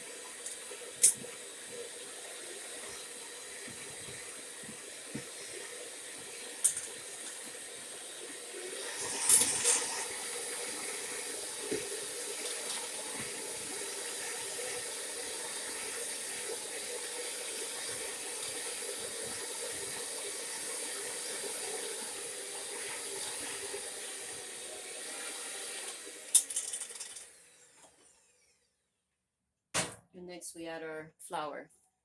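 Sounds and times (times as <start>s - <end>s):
electric mixer running: 1.6s - 26.3s
mixer clack and rattle: 26.3s - 27.3s.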